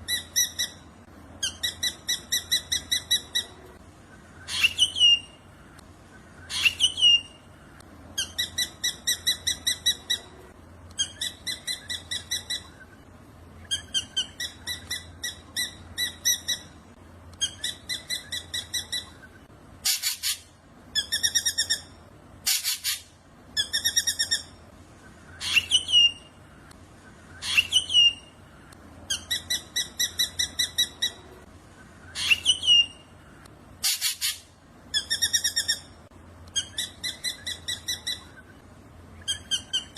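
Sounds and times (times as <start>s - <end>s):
sharp sweeping bird calls: 17.4s - 24.5s, 33.8s - 35.9s.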